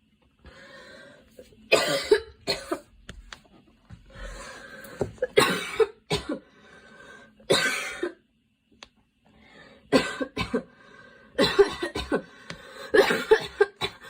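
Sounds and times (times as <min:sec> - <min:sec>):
girl coughing: 0:01.7 - 0:02.8, 0:05.2 - 0:06.4, 0:07.5 - 0:08.2, 0:09.9 - 0:10.7, 0:11.4 - 0:12.3, 0:12.9 - 0:14.0.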